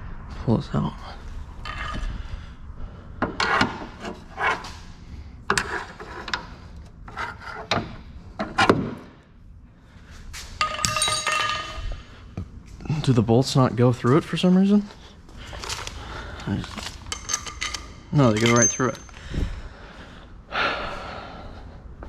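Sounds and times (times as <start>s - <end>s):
metal clanks and knocks: 10.6s - 12.1s, 16.8s - 19.2s
metal ringing: 10.6s - 12.1s, 17.1s - 19.2s.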